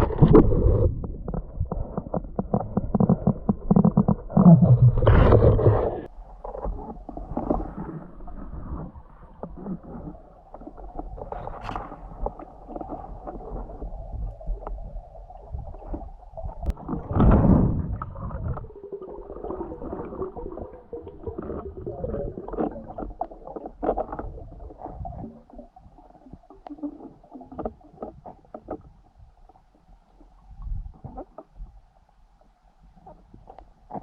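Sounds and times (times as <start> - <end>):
muffled water sloshing: 0.0 - 34.0
water whoosh: 7.3 - 25.4.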